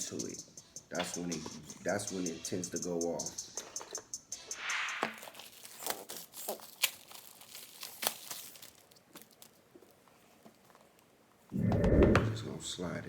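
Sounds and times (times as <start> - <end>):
packaging torn and crumpled: 5.0 - 9.9.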